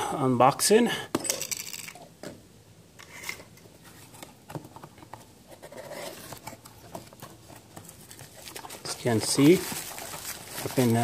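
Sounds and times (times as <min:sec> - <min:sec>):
cardboard box rustling: 0:03.8 - 0:11.0.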